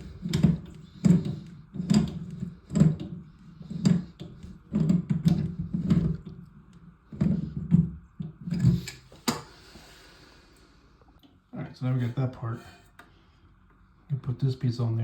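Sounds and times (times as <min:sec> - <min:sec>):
knocks and clunks of parts: 0:00.0 - 0:09.5.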